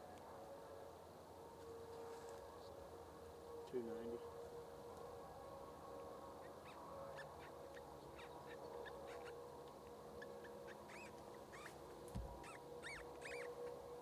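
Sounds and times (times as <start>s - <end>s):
short bird calls: 10.2s - 11.8s, 12.4s - 13.6s.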